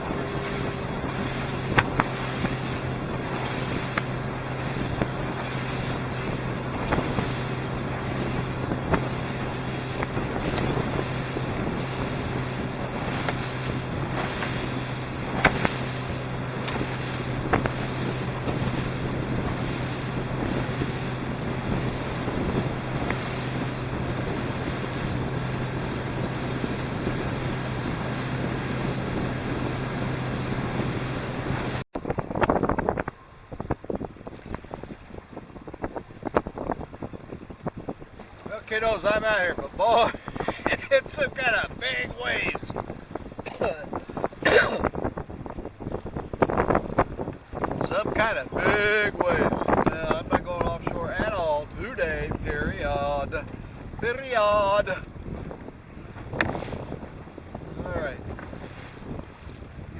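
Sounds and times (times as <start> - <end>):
boat motor humming: 0.0 - 59.9
water slapping against hull: 0.0 - 59.9
wind buffeting microphone: 0.0 - 59.9
sharp knocks: 15.4 - 15.8.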